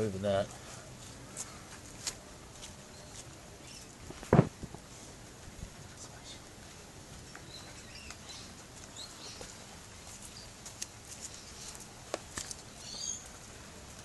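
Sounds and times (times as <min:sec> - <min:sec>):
small birds chirping: 0:02.6 - 0:04.0, 0:05.8 - 0:13.6.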